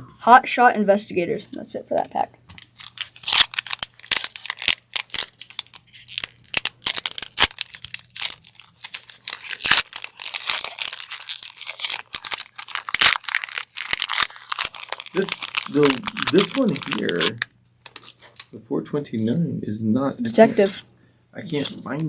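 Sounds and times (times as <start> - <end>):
foil wrapper tearing and crinkling: 2.6 - 18.5.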